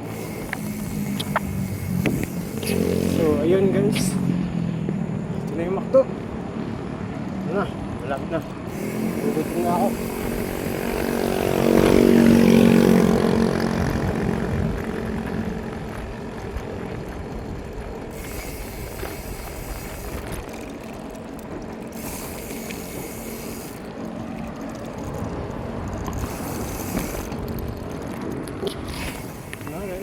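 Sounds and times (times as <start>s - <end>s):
vehicle engine passing: 0.0s - 16.4s
bicycle hub clicking: 0.0s - 30.0s
wind and road noise: 0.0s - 30.0s.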